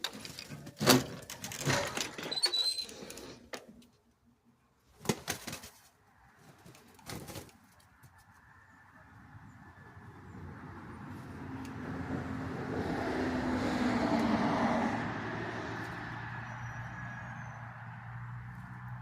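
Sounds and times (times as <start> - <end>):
chickens scuffling: 0.0 - 4.1, 4.8 - 8.7.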